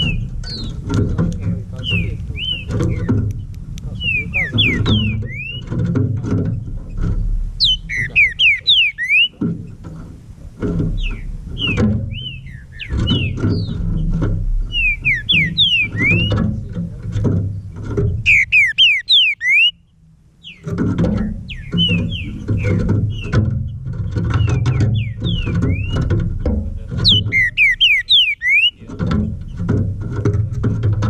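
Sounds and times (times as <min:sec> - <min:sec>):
bird whistling song: 0:00.0 - 0:00.8, 0:01.8 - 0:05.8, 0:07.6 - 0:09.4, 0:11.0 - 0:16.5, 0:18.2 - 0:26.1, 0:27.0 - 0:28.8.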